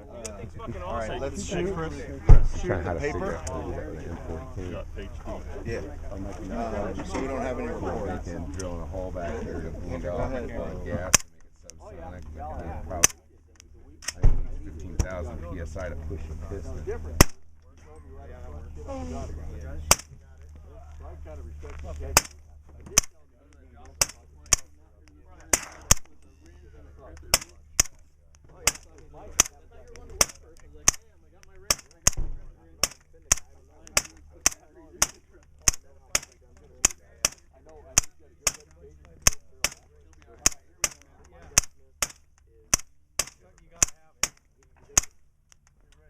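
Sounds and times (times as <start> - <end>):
suppressed gunshots: 17.2 - 17.4, 19.9 - 20.2, 23.9 - 24.8, 25.4 - 26.2, 27.2 - 28.0, 28.6 - 37.4, 38.0 - 45.2.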